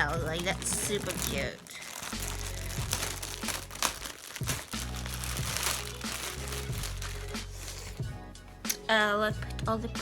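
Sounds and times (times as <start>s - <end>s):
packaging crinkling and rustling: 0.0s - 8.0s
background music with low notes: 0.0s - 10.0s.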